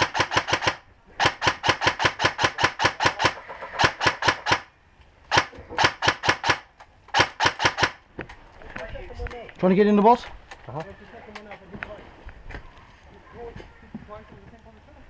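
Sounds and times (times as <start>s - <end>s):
airsoft gun firing bursts: 0.0s - 4.7s, 5.3s - 8.0s.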